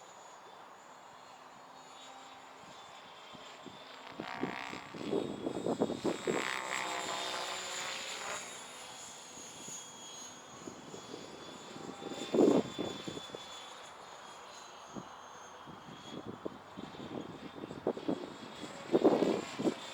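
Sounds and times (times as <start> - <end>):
rc helicopter motor whine: 0.0 - 19.9
wind buffeting microphone: 15.8 - 19.9.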